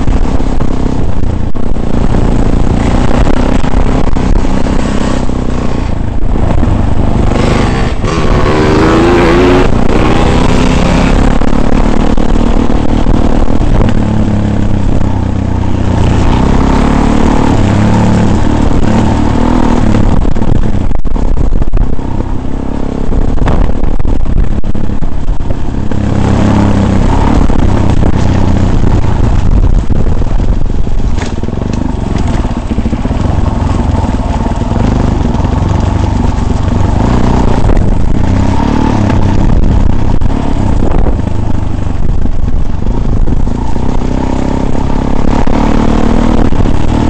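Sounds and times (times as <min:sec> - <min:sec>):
off-road vehicle engine revving: 0:01.7 - 0:20.6, 0:25.8 - 0:30.4, 0:31.1 - 0:47.0
vehicle clattering over rough ground: 0:25.5 - 0:47.0.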